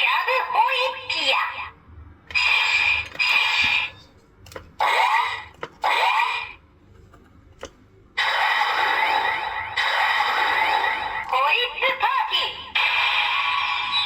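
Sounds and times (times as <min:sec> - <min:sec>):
toy electronic sound effects: 0:02.3 - 0:04.0, 0:12.7 - 0:14.0.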